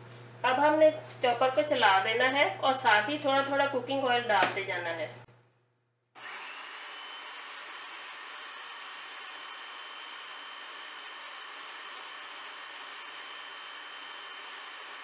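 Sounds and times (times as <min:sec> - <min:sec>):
food chopper motor whining: 0:06.2 - 0:15.0.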